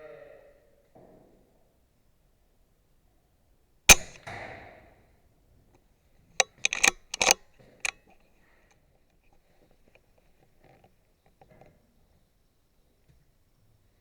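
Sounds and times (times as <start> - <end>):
sharp clicks and knocks: 3.9 - 4.3, 6.4 - 8.0
air rifle shot: 3.9 - 4.5.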